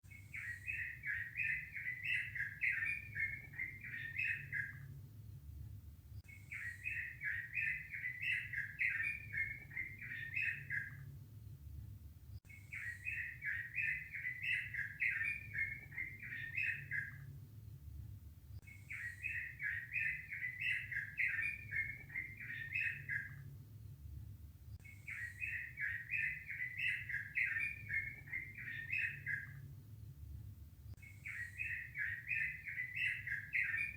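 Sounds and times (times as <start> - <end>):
low steady hum: 0.0 - 33.9
songbird warbling: 0.1 - 4.8, 6.3 - 11.0, 12.5 - 17.3, 18.7 - 23.4, 24.8 - 29.6, 31.0 - 33.9.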